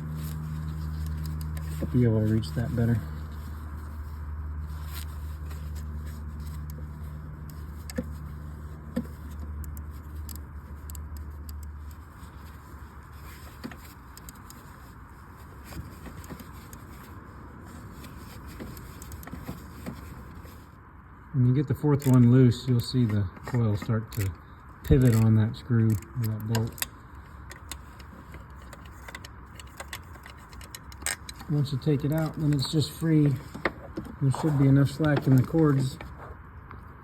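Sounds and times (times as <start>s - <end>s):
steady low hum: 0.0s - 37.0s
ratchet metallic clicks: 21.9s - 34.2s.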